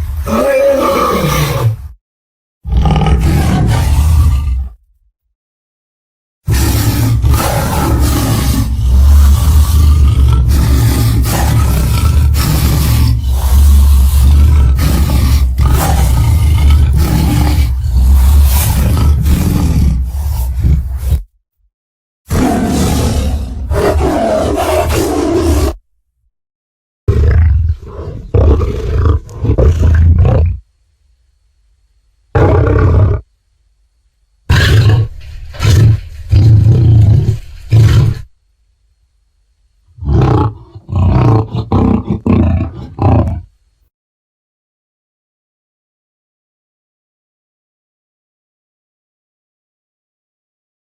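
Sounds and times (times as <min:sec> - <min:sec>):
deep dinosaur roars: 0:00.0 - 0:01.9, 0:02.6 - 0:04.8, 0:06.5 - 0:21.3, 0:22.3 - 0:25.8, 0:27.1 - 0:30.6, 0:32.4 - 0:33.3, 0:34.5 - 0:38.3, 0:40.0 - 0:43.5.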